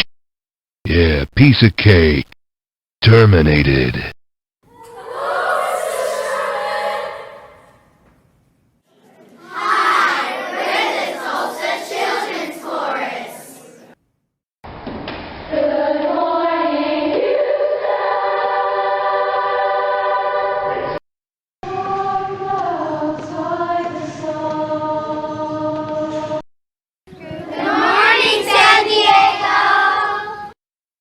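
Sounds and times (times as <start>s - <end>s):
choir singing held chords: 4.7s - 8.0s, 9.2s - 13.9s, 15.5s - 21.0s, 21.7s - 26.4s, 27.1s - 30.6s.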